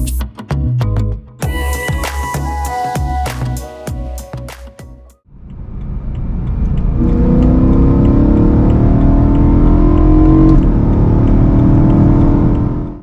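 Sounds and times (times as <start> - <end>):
car engine accelerating: 5.3 - 13.0.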